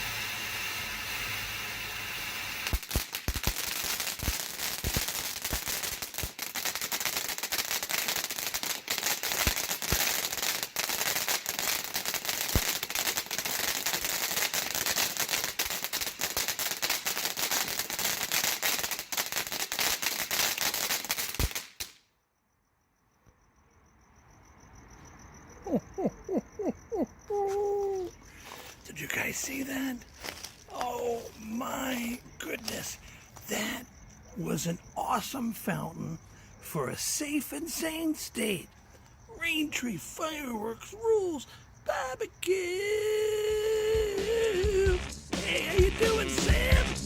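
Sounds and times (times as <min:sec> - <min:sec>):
firework fountain hissing and crackling: 0:00.0 - 0:22.0, 0:28.0 - 0:33.9, 0:41.9 - 0:47.0.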